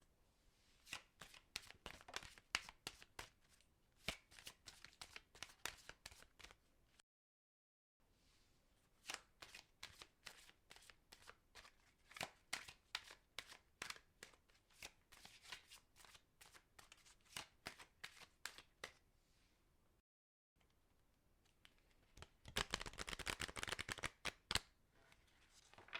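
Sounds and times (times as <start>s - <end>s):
playing cards shuffling: 21.6s - 24.6s.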